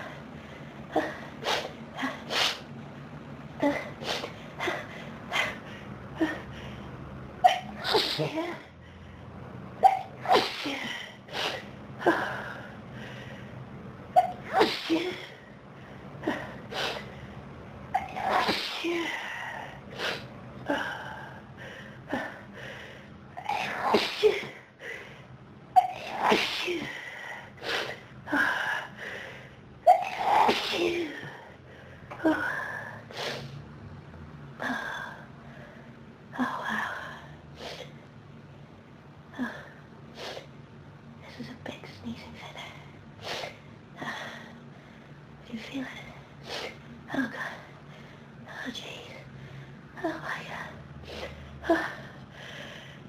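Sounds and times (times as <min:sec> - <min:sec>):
person sneezing: 0:07.5 - 0:08.6.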